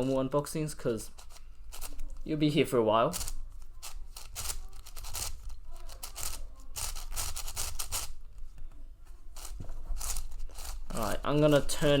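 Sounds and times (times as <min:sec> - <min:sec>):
puzzle cube layers clicking: 0:03.1 - 0:08.2, 0:09.4 - 0:11.1.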